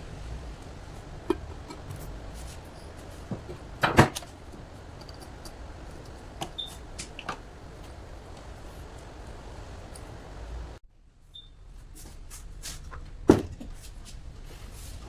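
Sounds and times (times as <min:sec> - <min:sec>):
hard objects knocking and clicking: 0:03.2 - 0:07.5.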